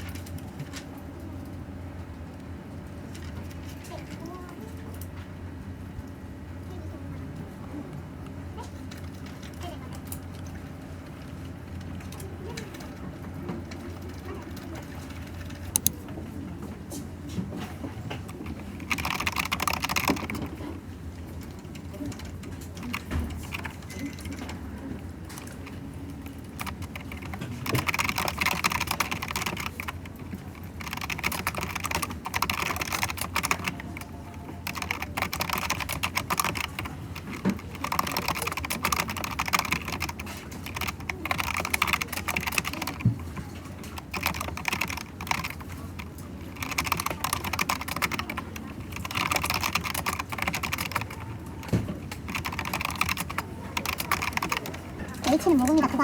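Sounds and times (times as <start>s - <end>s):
typing on computer keyboard: 11.1s - 16.0s, 18.1s - 56.0s.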